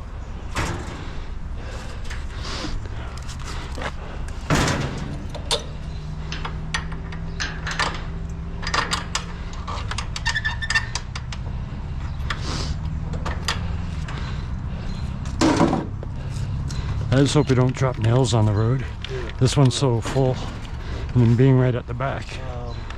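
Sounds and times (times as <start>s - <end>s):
scrap metal clanking and rattling: 0.3s - 3.7s, 4.3s - 11.3s, 15.4s - 16.0s.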